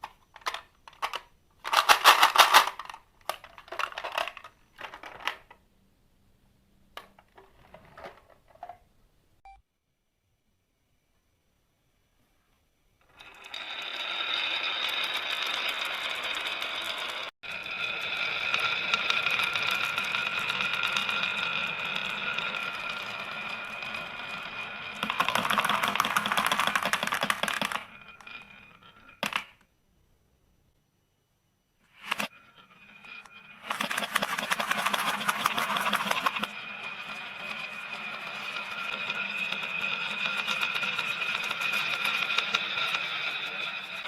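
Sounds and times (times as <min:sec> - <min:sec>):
marbles rolling down wooden track: 0:00.4 - 0:05.6, 0:13.0 - 0:29.6, 0:31.9 - 0:44.0.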